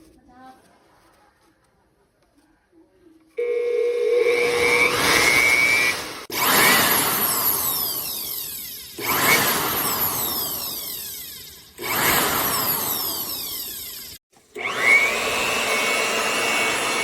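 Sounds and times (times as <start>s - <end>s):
electric blower motor whine: 3.4s - 17.0s.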